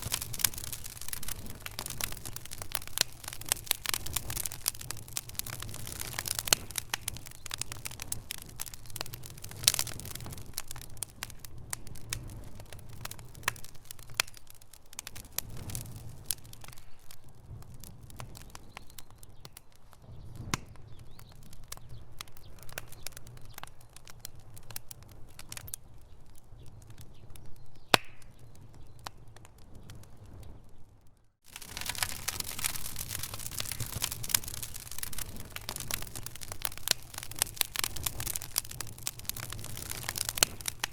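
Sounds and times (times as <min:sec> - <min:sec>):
fire crackling and popping: 0:00.0 - 0:40.9
low rumble of flames: 0:00.0 - 0:40.9.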